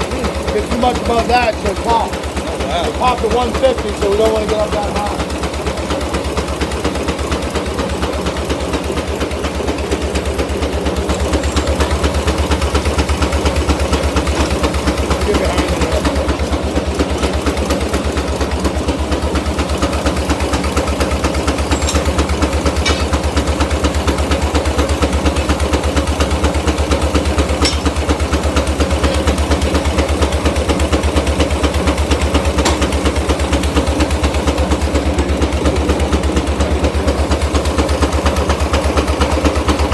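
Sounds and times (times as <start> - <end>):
steam engine exhaust beating: 0.0 - 39.9.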